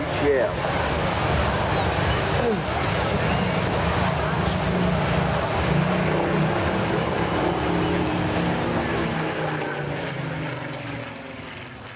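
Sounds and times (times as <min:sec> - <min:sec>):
propeller aircraft engine flying past: 0:00.0 - 0:11.9.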